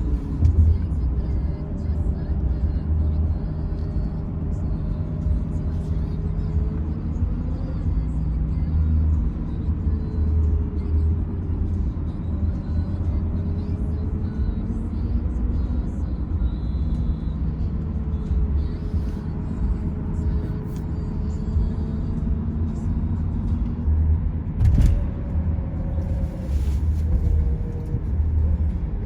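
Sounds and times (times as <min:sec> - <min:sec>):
motor vehicle engine rumble: 0:00.0 - 0:29.0.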